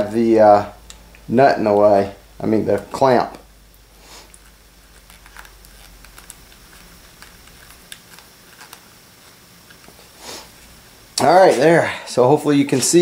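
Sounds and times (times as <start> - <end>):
soft rush of noise: 0.0 - 13.0.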